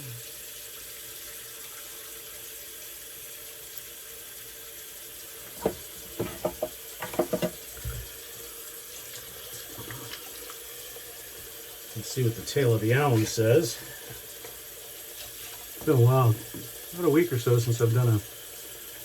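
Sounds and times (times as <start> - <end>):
water splashes and knocks: 5.3 - 8.4, 9.0 - 11.6, 12.3 - 16.9
tap running into sink: 5.4 - 8.3, 15.2 - 16.9.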